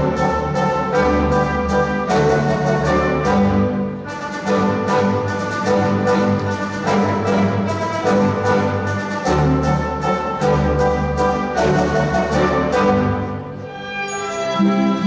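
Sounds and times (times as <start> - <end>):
orchestral music with brass and strings: 0.0 - 15.0.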